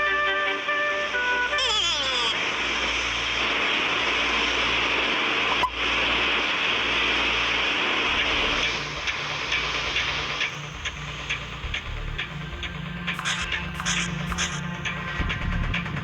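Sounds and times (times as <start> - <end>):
sharp click: 13.2 - 14.6.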